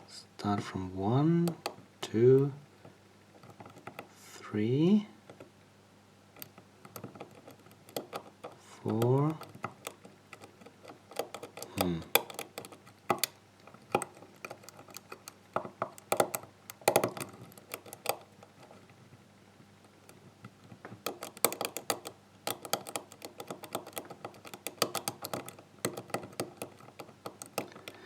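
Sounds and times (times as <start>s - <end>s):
lock pick clicking in a lock: 1.5s - 1.8s, 3.4s - 4.1s, 6.4s - 18.8s, 20.0s - 28.0s.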